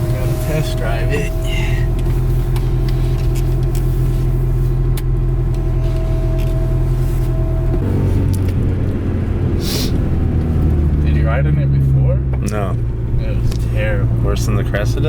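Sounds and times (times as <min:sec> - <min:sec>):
car engine running: 0:00.0 - 0:15.0.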